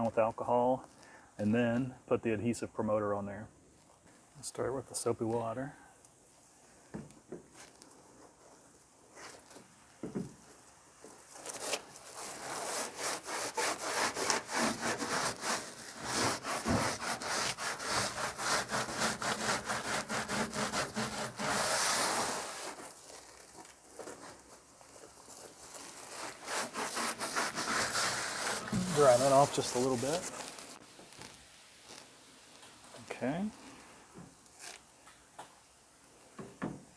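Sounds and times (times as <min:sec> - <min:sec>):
scrubbing with soapy water: 0:12.0 - 0:23.4, 0:25.6 - 0:30.8
brief hiss: 0:28.4 - 0:30.8.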